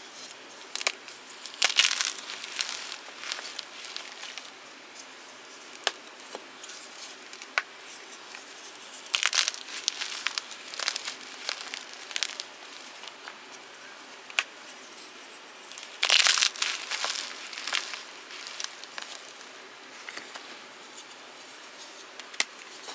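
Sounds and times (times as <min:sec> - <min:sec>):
chalk being crushed: 0:00.8 - 0:04.6, 0:09.0 - 0:13.3, 0:15.8 - 0:19.7.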